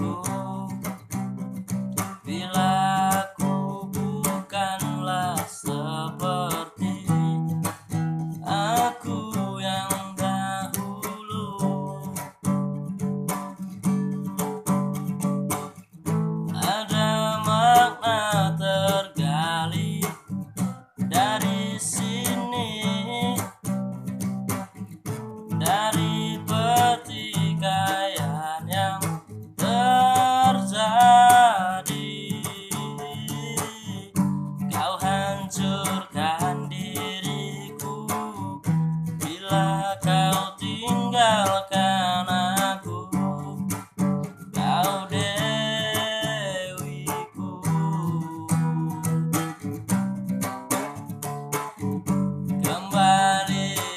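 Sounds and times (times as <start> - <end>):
person singing: 0.0 - 1.0, 2.0 - 7.8, 8.4 - 12.3, 16.5 - 23.6, 25.5 - 49.3, 52.6 - 53.9
strummed acoustic guitar: 0.0 - 53.9.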